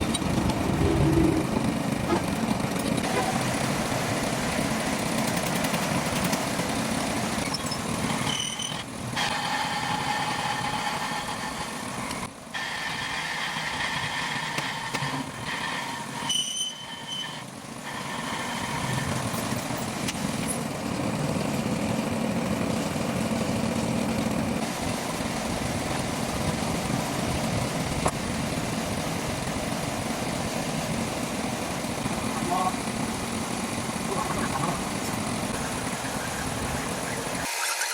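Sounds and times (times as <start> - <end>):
metal lathe running: 0.0 - 37.9
high-pitched machining whine: 7.2 - 20.6, 31.5 - 37.9.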